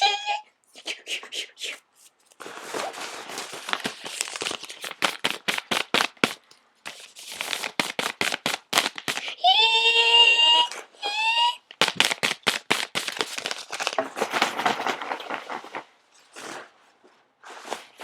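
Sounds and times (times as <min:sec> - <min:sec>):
sharp clicks and crackles: 0:03.6 - 0:09.3, 0:11.7 - 0:15.4.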